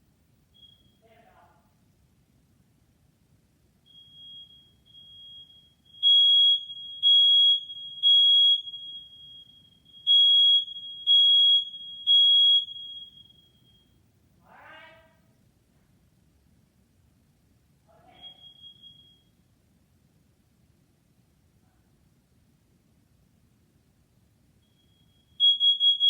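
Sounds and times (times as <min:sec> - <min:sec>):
faint steady alarm tone: 0:00.0 - 0:02.0, 0:03.7 - 0:14.2, 0:17.9 - 0:19.8, 0:24.6 - 0:26.0
smoke alarm beeps: 0:00.5 - 0:01.3, 0:03.8 - 0:14.0, 0:18.1 - 0:19.5, 0:24.6 - 0:26.0.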